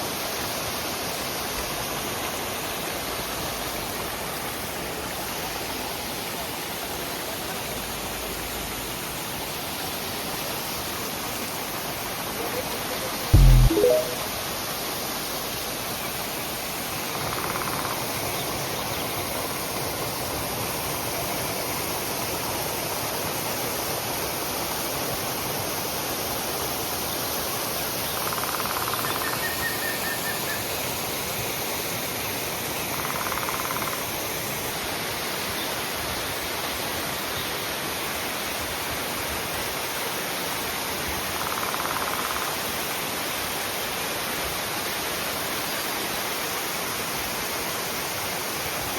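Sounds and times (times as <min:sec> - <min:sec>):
high chirps: 0:13.4 - 0:14.3.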